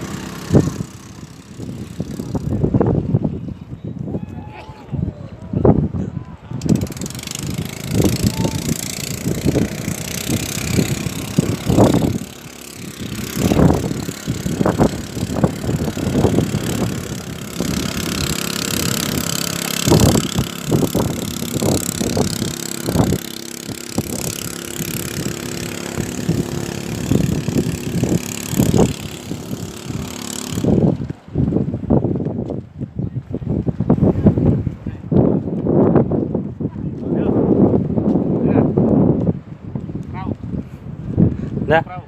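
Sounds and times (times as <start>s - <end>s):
engine running steadily: 0.0s - 3.0s, 6.5s - 31.6s
wind buffeting microphone: 0.0s - 42.0s.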